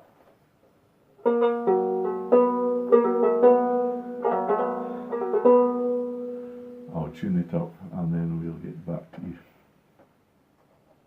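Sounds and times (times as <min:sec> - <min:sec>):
banjo-ukulele plucked while tuning: 0:01.2 - 0:07.2.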